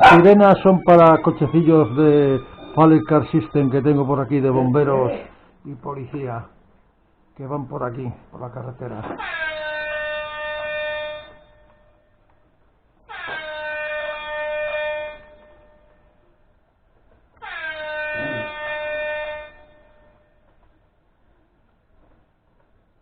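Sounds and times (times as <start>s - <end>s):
emergency vehicle horn blasts: 0.0s - 5.4s, 9.5s - 11.6s, 13.2s - 15.9s, 17.4s - 20.2s.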